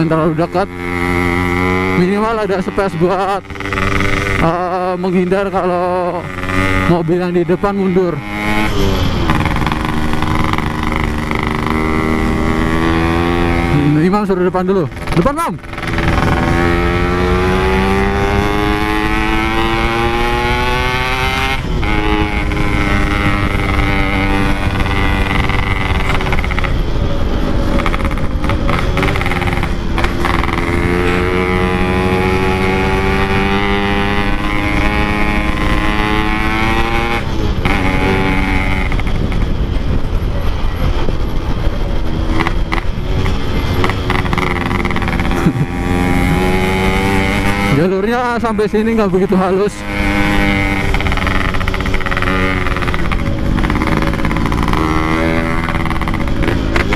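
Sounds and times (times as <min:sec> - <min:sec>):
two-stroke motorcycle engine revving: 0:00.0 - 0:56.9
wind noise on microphone: 0:14.9 - 0:47.9, 0:49.8 - 0:56.9.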